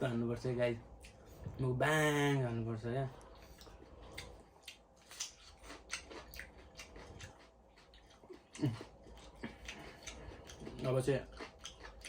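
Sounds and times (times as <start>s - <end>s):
crunchy chewing: 3.1s - 12.0s.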